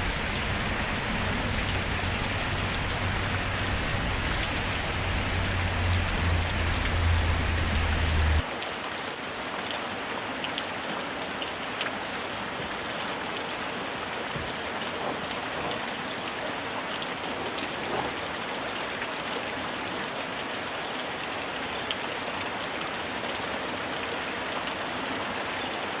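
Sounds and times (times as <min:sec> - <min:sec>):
low rumble: 0:00.0 - 0:08.4
raindrops tapping: 0:00.0 - 0:08.4
steady rain falling: 0:00.0 - 0:26.0.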